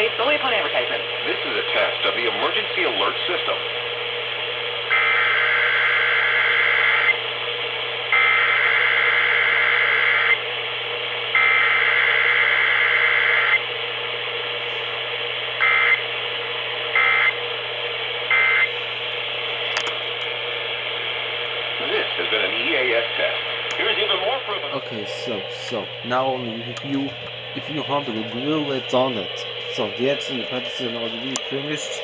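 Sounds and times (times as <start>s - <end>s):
radio hiss and hum: 0.0s - 32.0s.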